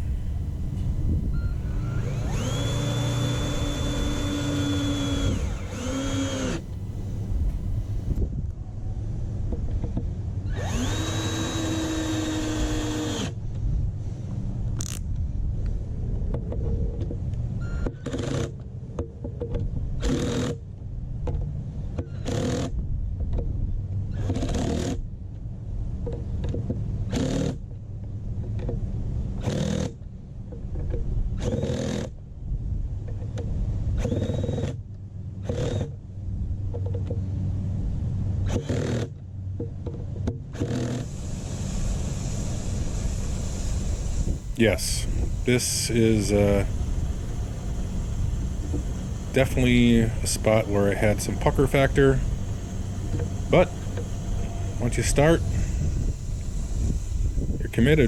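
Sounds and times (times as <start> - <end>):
power drill driving screws: 0.0 - 8.2, 10.5 - 13.4, 40.6 - 58.0.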